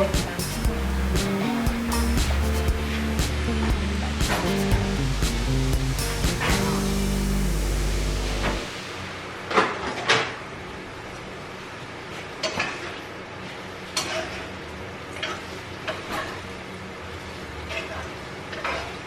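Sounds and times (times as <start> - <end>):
faint steady hiss: 0.0 - 12.1.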